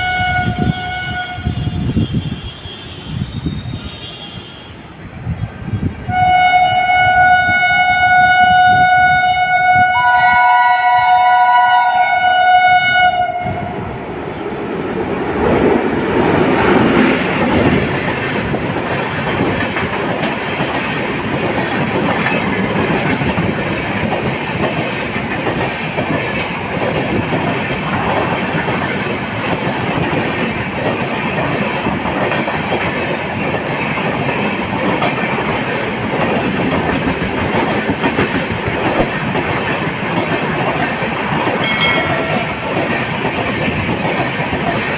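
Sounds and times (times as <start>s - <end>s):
locomotive horn blast: 0.0s - 3.2s, 6.1s - 13.7s
train wheels clattering: 14.7s - 44.9s.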